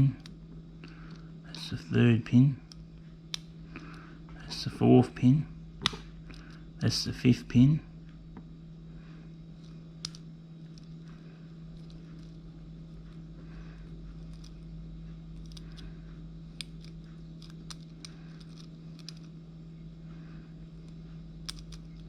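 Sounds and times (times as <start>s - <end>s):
steady low hum: 0.0s - 22.0s
metallic clicks in padlock: 21.4s - 22.0s.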